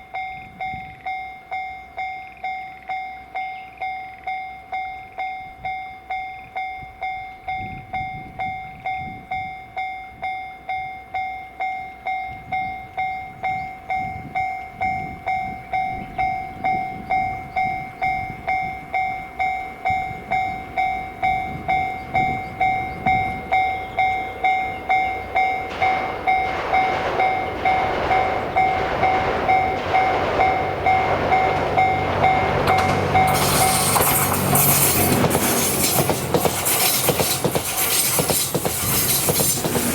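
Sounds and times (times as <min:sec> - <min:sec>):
level-crossing warning bell: 0:00.0 - 0:38.7
diesel train passing: 0:10.6 - 0:39.9.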